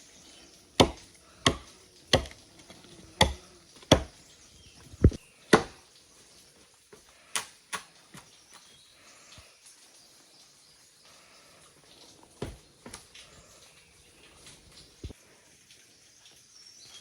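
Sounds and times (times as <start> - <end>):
sharp chopping strikes: 0.8 - 2.4, 3.2 - 4.1, 5.0 - 5.8.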